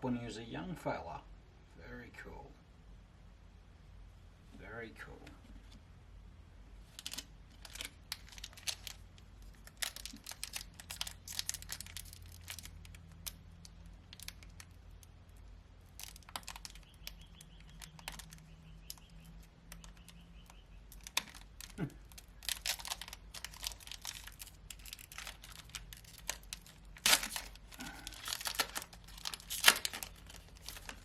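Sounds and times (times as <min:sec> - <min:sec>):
foil wrapper crinkling: 0:06.9 - 0:31.0.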